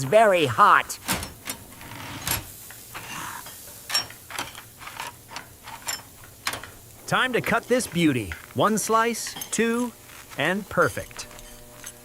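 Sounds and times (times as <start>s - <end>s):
soft rustle: 6.7s - 12.0s.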